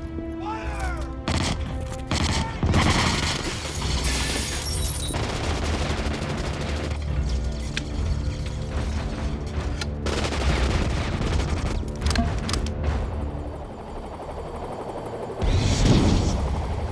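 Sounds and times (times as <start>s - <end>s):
rapid gunfire: 1.3s - 7.2s, 9.0s - 13.4s.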